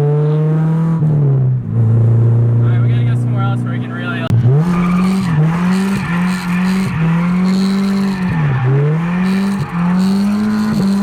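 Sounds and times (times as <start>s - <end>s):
car engine at high revs: 0.0s - 2.6s, 3.8s - 11.0s
tire squeal: 4.5s - 11.0s.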